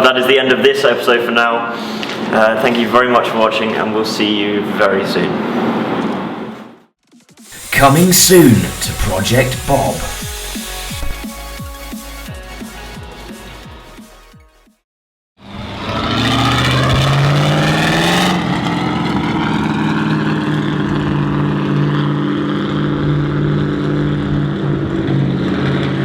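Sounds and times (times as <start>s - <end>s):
hissing rush: 7.5s - 11.2s
car engine revving: 15.4s - 26.0s.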